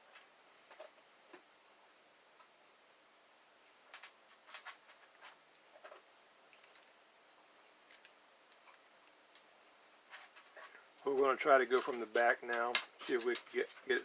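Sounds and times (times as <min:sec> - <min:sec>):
lock pick clicking and scraping: 0:07.8 - 0:08.2.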